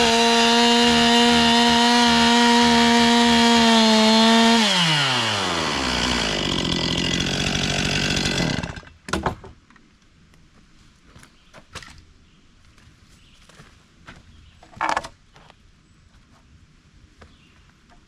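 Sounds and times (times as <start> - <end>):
chainsaw engine idling: 0.0 - 8.9.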